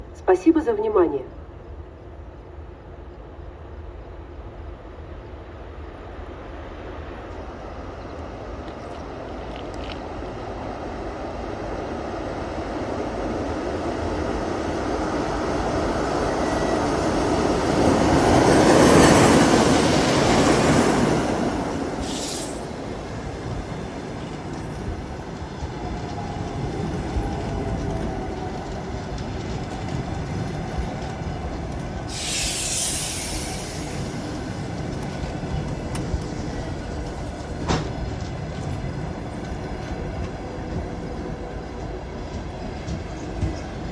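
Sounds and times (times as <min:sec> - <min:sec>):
train rolling past: 0:00.0 - 0:43.9
hissing bursts: 0:21.8 - 0:22.9, 0:32.0 - 0:34.8.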